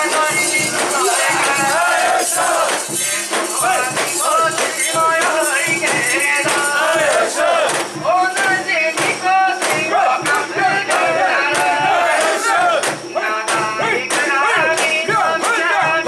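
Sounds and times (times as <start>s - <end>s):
crowd chanting in rhythm: 0.0s - 16.0s
jingling rattling beat: 0.0s - 16.0s.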